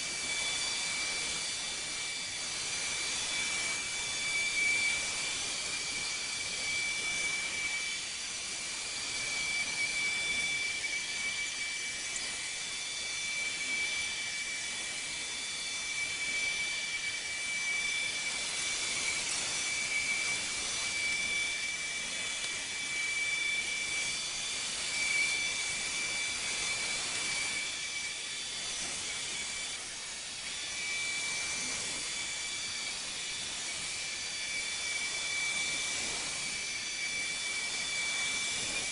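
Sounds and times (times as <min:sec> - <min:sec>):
robot vacuum whine: 0:00.0 - 0:38.9.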